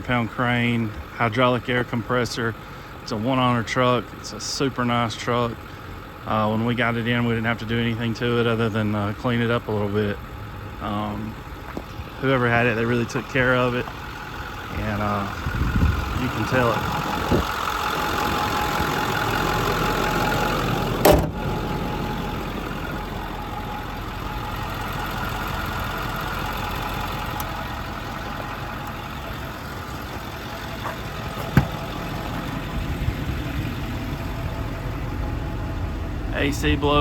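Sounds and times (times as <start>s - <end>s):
diesel engine idling: 0.0s - 37.0s
brief thump: 21.0s - 21.4s, 30.8s - 31.9s.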